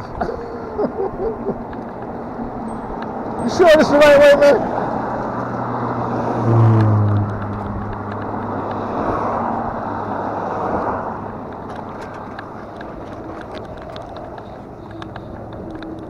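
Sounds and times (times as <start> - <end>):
tyres rolling: 0.9 - 16.0
ticks and crackles from ground: 1.4 - 3.1, 11.2 - 16.0.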